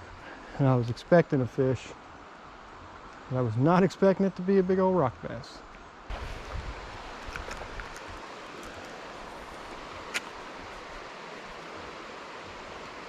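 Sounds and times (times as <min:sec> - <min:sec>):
creek water running: 0:00.0 - 0:13.0.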